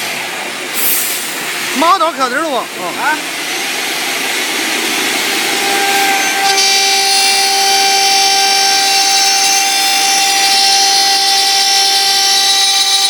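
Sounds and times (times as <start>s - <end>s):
wood lathe machine whine: 3.2s - 13.0s.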